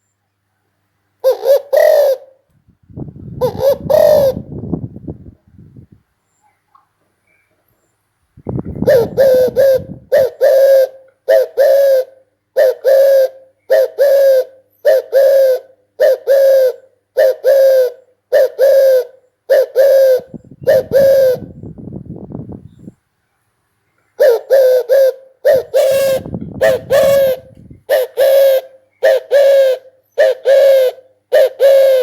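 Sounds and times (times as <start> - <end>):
dove cooing: 1.2 - 2.4, 3.3 - 4.9, 8.6 - 21.8, 24.2 - 32.0
low rumbling noise: 2.6 - 6.0.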